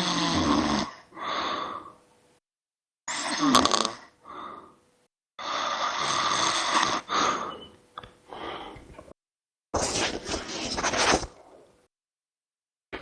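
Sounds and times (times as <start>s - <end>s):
snoring: 0.0s - 1.2s, 3.1s - 4.5s, 5.4s - 7.6s.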